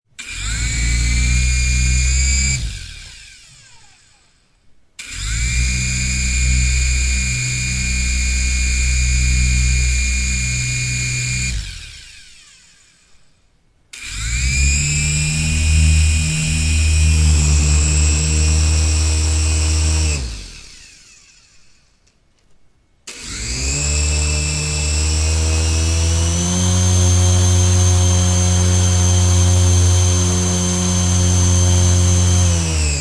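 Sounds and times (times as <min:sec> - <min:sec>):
toy motor whirring: 0:00.2 - 0:13.4, 0:14.0 - 0:16.6, 0:19.3 - 0:22.1
low pulsing hum: 0:14.2 - 0:21.1.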